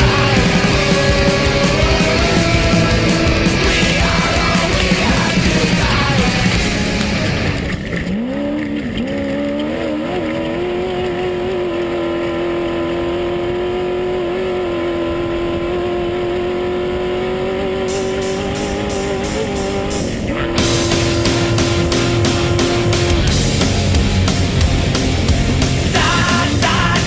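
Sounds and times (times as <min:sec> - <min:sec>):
heavy metal music: 0:00.0 - 0:08.2, 0:17.7 - 0:27.0
race buggy engine revving: 0:00.0 - 0:27.0.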